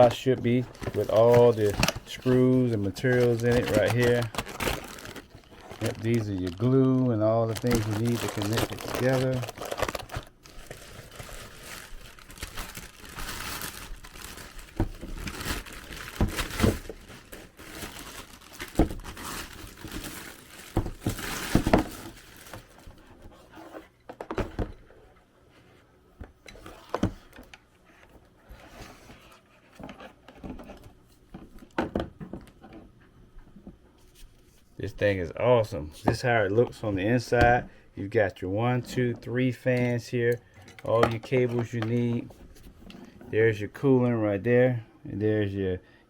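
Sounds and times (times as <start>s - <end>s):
packaging crinkling and rustling: 0.0s - 23.4s, 38.8s - 43.2s.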